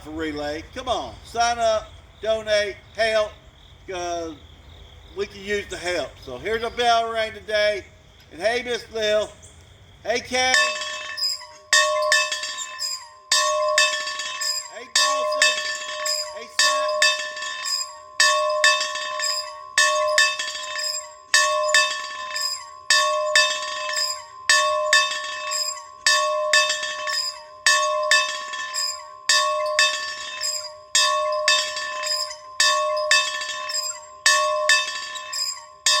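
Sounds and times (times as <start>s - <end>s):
bell ringing in swinging rhythm: 10.1s - 36.0s.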